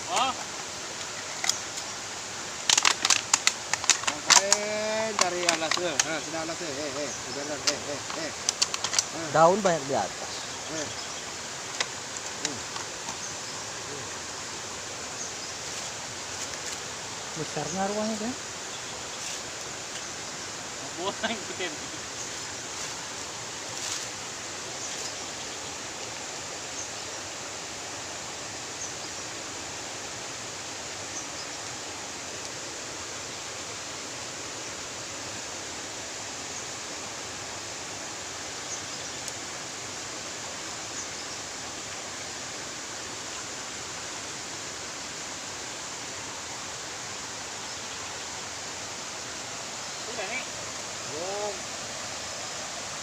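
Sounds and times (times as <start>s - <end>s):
stream water flowing: 0.0s - 53.0s
faint clicks: 7.6s - 9.1s.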